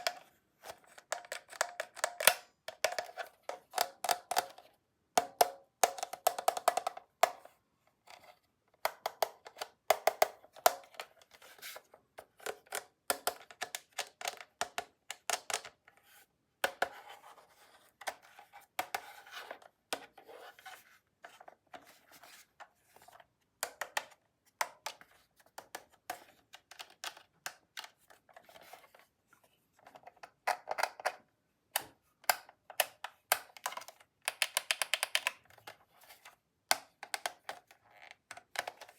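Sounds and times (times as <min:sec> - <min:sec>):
plastic toy parts clicking: 0:31.8 - 0:35.7.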